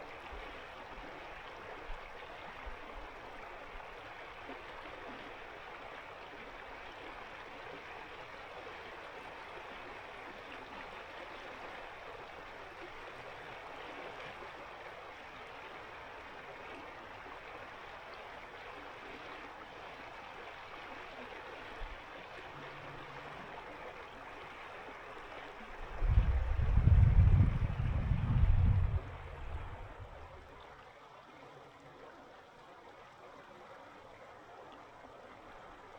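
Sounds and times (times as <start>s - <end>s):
loud low rumble: 26.0s - 30.4s.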